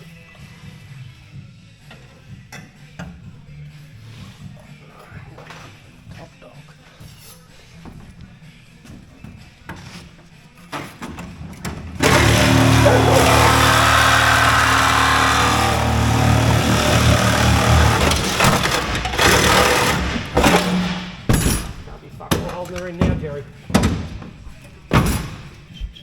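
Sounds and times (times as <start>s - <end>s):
power tool running: 12.0s - 21.2s.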